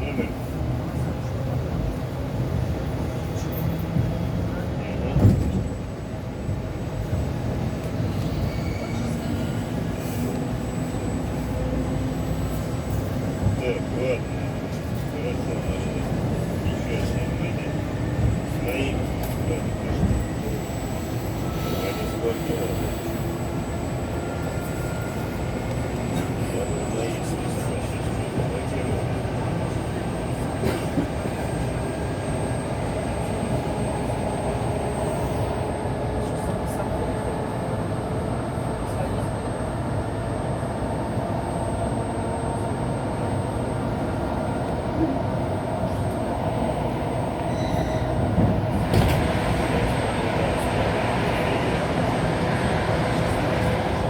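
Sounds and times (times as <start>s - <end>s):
train wheels rumbling on rails: 44.1s - 54.0s.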